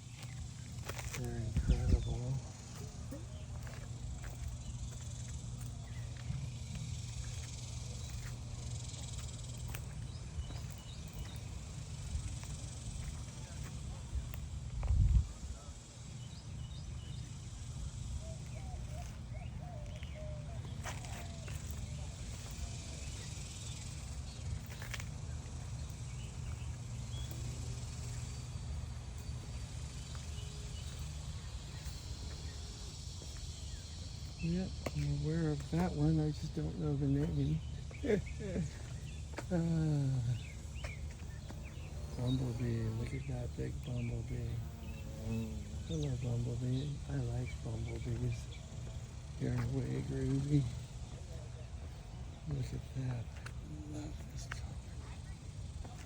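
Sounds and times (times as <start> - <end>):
high insect hiss: 0.0 - 56.0
wind rumble on microphone: 1.2 - 2.4, 14.1 - 15.7.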